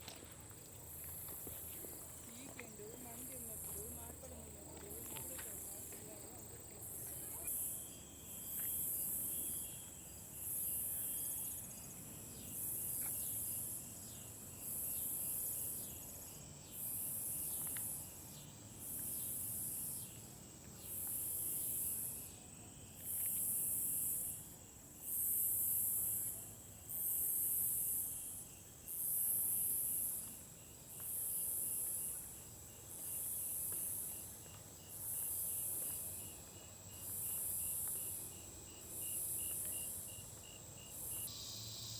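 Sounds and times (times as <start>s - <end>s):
crickets chirping: 0.0s - 41.9s
high-pitched insect buzz pulsing: 36.9s - 41.9s.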